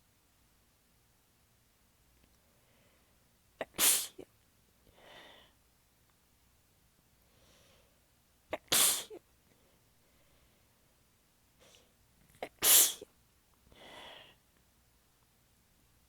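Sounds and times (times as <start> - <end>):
soft breath: 2.4 - 3.2, 4.9 - 5.6, 7.2 - 8.0, 9.5 - 10.8, 13.7 - 14.5
person sneezing: 3.6 - 4.3, 8.6 - 9.2, 12.4 - 13.1.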